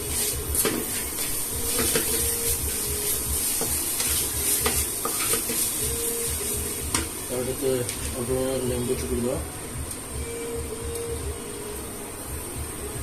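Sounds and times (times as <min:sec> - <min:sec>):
spoon scraping a pan: 0:00.0 - 0:07.2
food sizzling: 0:00.0 - 0:13.0.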